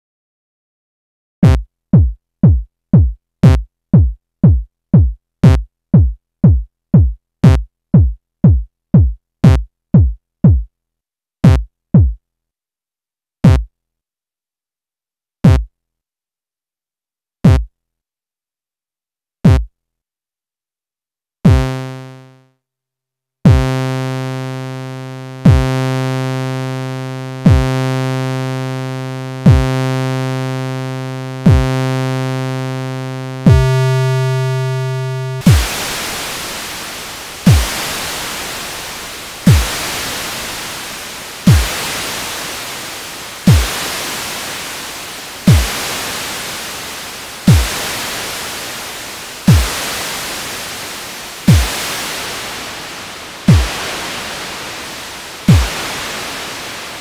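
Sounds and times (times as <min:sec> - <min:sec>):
synthesizer kick-drum thumps: 0:01.4 - 0:10.7, 0:11.4 - 0:12.2, 0:13.4 - 0:13.7, 0:15.4 - 0:15.7, 0:17.4 - 0:17.7, 0:19.4 - 0:19.7, 0:21.5 - 0:22.1, 0:23.5 - 0:42.6, 0:43.4 - 0:44.2, 0:45.4 - 0:46.1, 0:47.4 - 0:48.1, 0:49.5 - 0:50.2, 0:51.5 - 0:52.0, 0:53.5 - 0:53.9, 0:55.5 - 0:56.0
buzzy low synthesizer tone: 0:21.5 - 0:22.4, 0:23.5 - 0:50.9.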